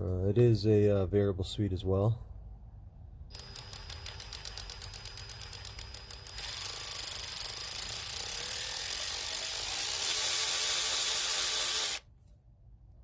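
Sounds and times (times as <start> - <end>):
electric ratchet whining: 3.3 - 12.1.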